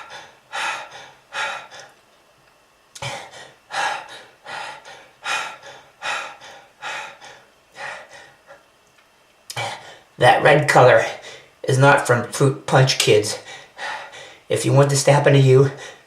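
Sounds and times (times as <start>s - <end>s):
gasping breaths: 0.0s - 2.0s, 3.0s - 8.7s.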